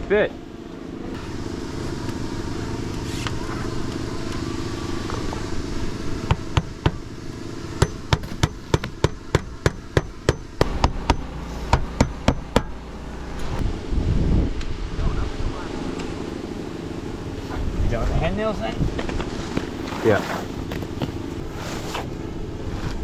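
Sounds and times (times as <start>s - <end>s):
hammer driving nails: 7.8s - 12.7s
wind noise on microphone: 13.4s - 15.8s, 17.5s - 19.6s.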